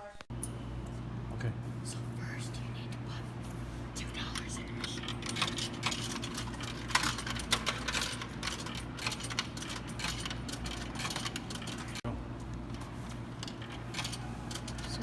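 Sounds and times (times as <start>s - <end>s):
vending machine hum: 0.3s - 15.0s
coins clicking and rattling in machine: 4.1s - 12.0s, 13.4s - 15.0s.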